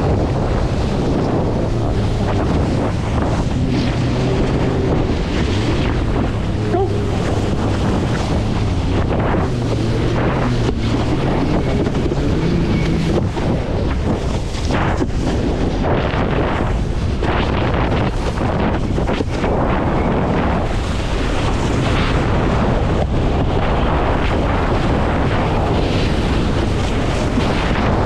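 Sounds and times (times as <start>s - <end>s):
ocean surf: 0.0s - 28.0s
watercraft engine running: 0.0s - 28.0s
wind buffeting microphone: 0.0s - 28.0s.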